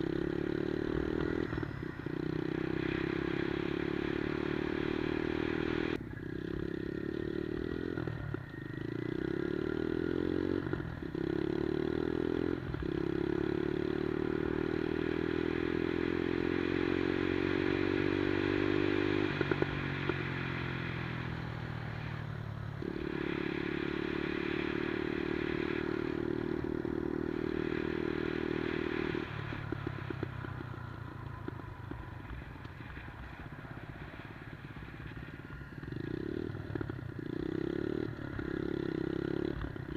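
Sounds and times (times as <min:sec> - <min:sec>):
minibike engine revving: 0:00.0 - 0:39.9.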